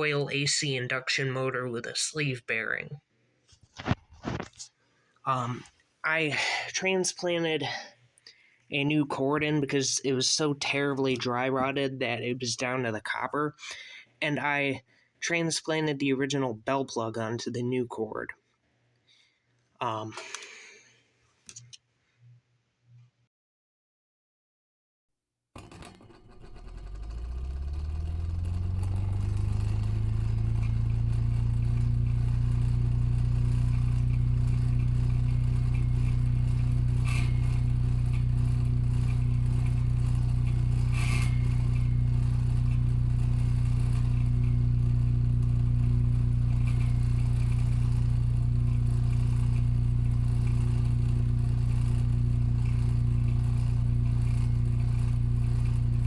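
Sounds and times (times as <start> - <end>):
brief clicks: 20.1 - 20.6, 21.4 - 21.8
wall fan motor humming: 25.6 - 56.0.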